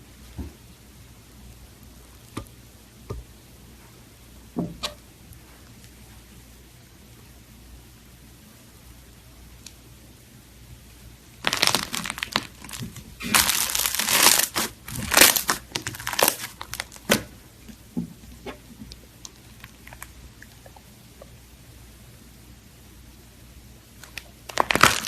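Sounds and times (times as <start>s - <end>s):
slime squeezed by hand crackling: 11.4s - 17.3s, 24.0s - 25.0s.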